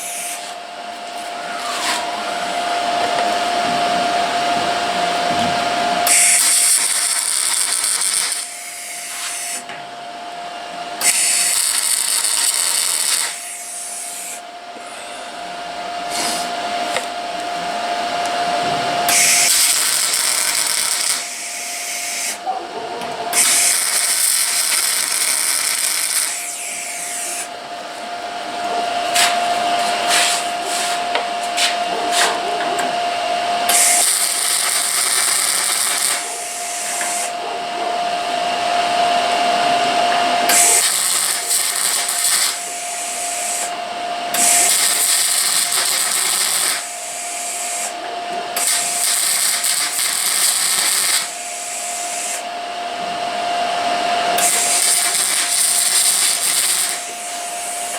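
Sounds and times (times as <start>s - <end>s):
welding arc crackling on metal: 6.0s - 9.7s, 11.0s - 14.4s, 19.1s - 22.4s, 23.3s - 27.5s, 33.6s - 37.4s, 40.4s - 52.4s, 54.4s - 57.9s.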